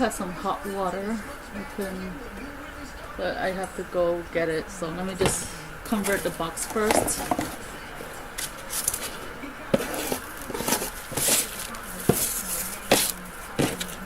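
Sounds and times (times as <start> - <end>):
items handled on a table: 5.2 - 14.0.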